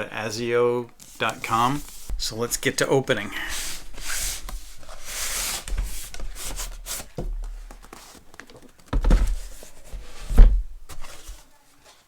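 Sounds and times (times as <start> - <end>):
cardboard box rubbing and sliding: 3.5 - 7.2.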